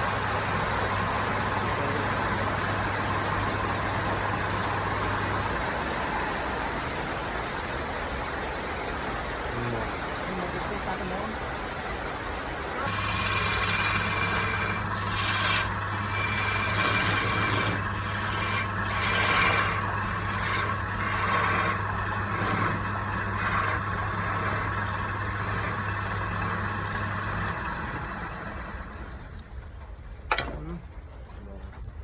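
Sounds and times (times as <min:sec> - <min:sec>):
power tool motor humming: 0:12.7 - 0:29.4
wood scraping or sanding: 0:12.7 - 0:29.4.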